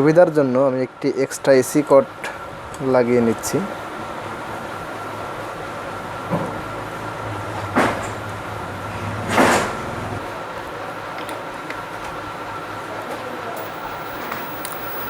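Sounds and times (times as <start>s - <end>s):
faint steady hum: 13.6s - 15.0s
sharp click: 13.6s - 15.0s.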